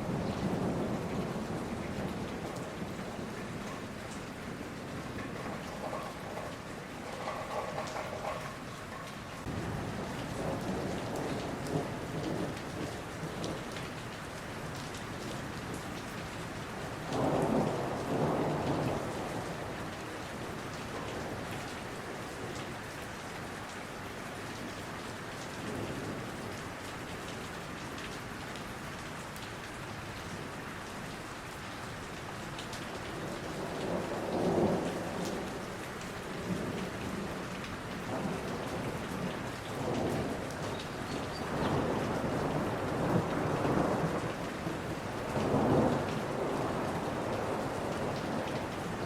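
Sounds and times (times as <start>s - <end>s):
thunder rumbling: 0.0s - 13.6s, 17.1s - 20.0s, 33.2s - 49.0s
rain falling on forest: 0.0s - 49.0s.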